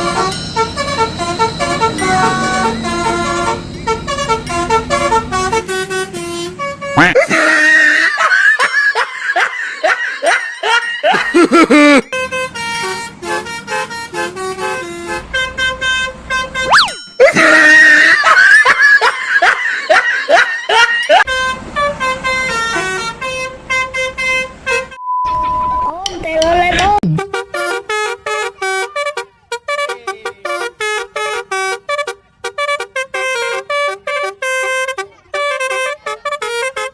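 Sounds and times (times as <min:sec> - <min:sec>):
bus horn playing a tune: 0:00.0 - 0:08.8, 0:10.3 - 0:20.0, 0:20.7 - 0:25.0, 0:27.0 - 0:36.9
laughter-like voice sounds: 0:07.0 - 0:12.2, 0:17.2 - 0:21.3.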